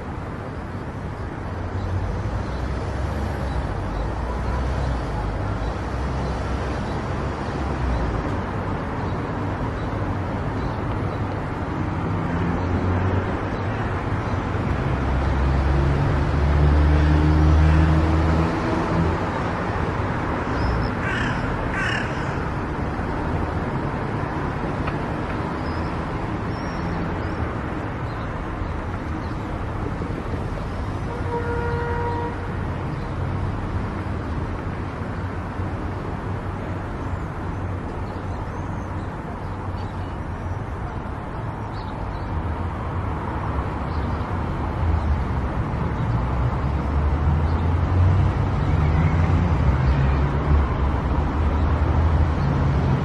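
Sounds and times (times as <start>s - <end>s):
car road and tyre noise: 0.0s - 53.0s.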